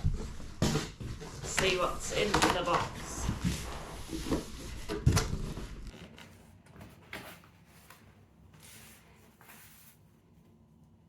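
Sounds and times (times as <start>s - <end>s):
cardboard scraping and rustling: 1.2s - 10.1s.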